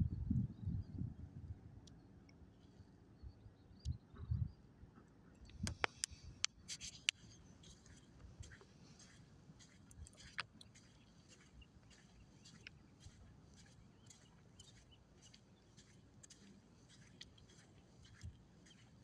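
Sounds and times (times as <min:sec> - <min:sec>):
faint ticks: 0:05.4 - 0:19.0.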